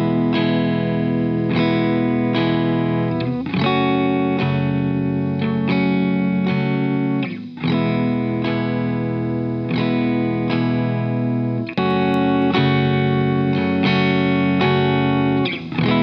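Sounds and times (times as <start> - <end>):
overdriven electric guitar chords: 0.0 - 16.0.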